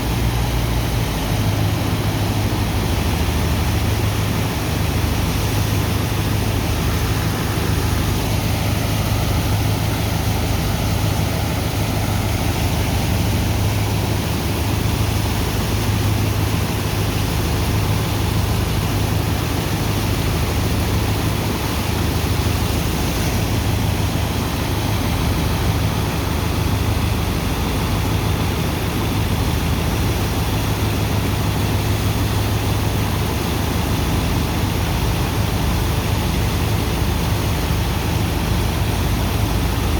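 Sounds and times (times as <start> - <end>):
engine and pump drone: 0.0 - 39.9
rushing water and sand: 0.0 - 39.9.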